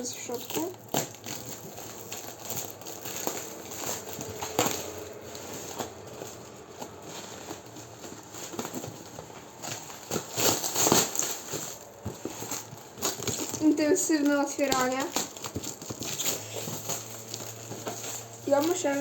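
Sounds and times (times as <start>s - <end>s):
packaging rustling and tearing: 0.0s - 19.0s.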